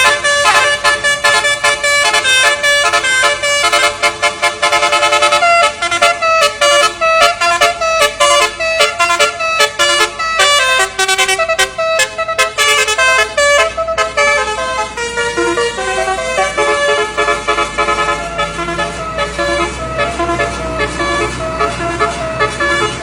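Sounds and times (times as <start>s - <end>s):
bus musical horn playing a tune: 0.0s - 23.0s.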